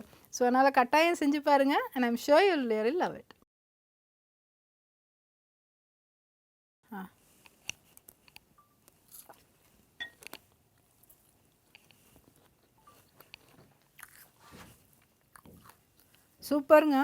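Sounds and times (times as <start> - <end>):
person chewing crunchy salad: 7.8 - 16.4.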